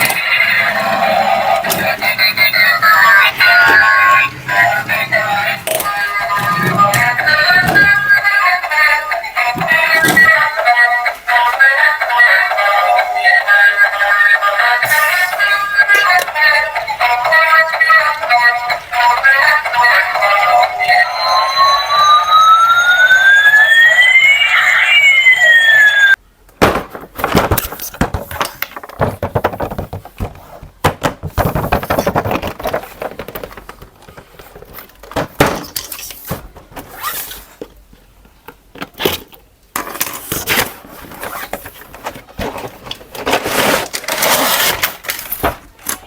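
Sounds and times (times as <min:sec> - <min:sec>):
toy electronic siren: 0:00.0 - 0:08.3, 0:09.5 - 0:10.7, 0:18.4 - 0:26.2.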